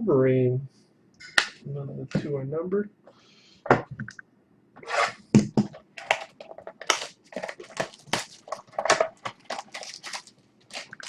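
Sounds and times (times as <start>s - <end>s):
wrapper tearing and crinkling: 6.0s - 11.0s.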